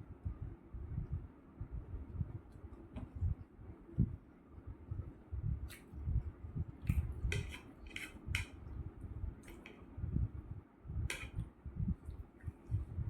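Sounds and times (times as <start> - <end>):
soft chewing: 5.6 - 6.0, 6.7 - 8.7, 9.4 - 9.9
fork clicking against plate: 6.8 - 8.6, 9.4 - 9.8, 11.1 - 11.4.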